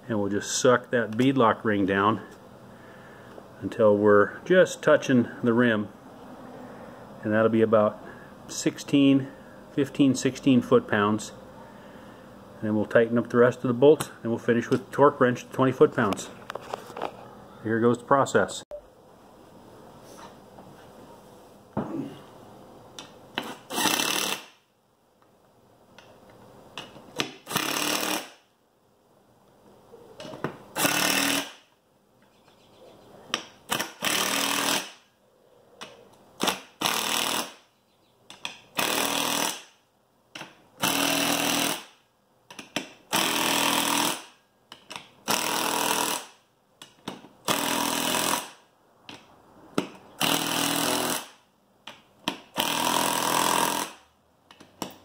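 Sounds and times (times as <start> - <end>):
impact driver hammering bolts: 33.3 - 35.0, 35.8 - 37.6, 40.4 - 55.0.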